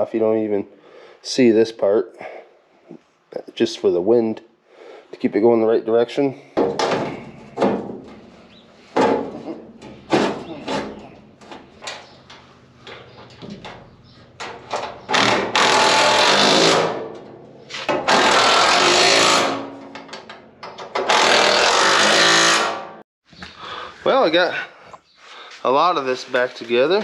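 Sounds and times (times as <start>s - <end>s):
metal knocks and clanks: 6.6s - 22.8s
power tool running: 15.1s - 17.0s, 18.0s - 19.7s, 21.0s - 22.9s.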